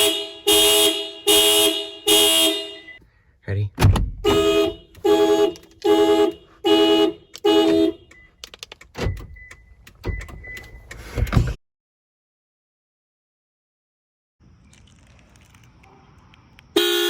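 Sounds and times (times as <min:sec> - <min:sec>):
car horn honking: 0:00.0 - 0:03.0, 0:04.2 - 0:08.4, 0:16.8 - 0:17.0
clicks: 0:07.3 - 0:11.2.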